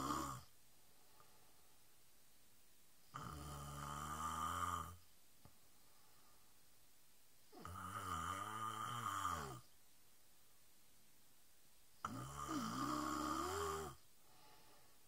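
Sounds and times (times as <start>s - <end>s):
woman snoring: 0.0s - 0.5s, 3.1s - 5.0s, 7.5s - 9.7s, 12.0s - 14.0s.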